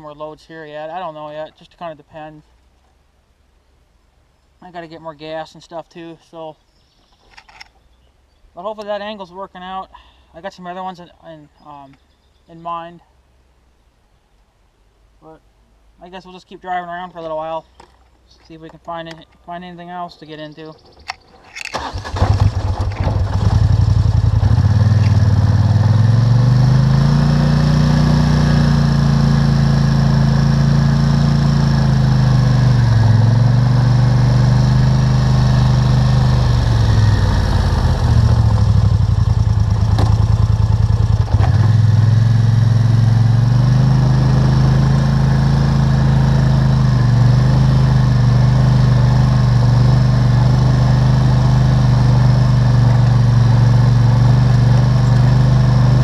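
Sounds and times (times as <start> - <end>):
atv engine revving: 20.9 - 56.0.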